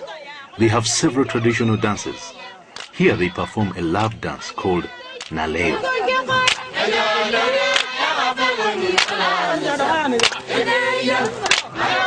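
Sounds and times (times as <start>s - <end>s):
group chanting: 0.0s - 12.0s
sharp clap-like beat: 2.8s - 3.0s, 4.0s - 4.2s, 6.3s - 6.7s, 7.7s - 8.0s, 8.9s - 9.2s, 10.1s - 10.4s, 11.2s - 11.7s.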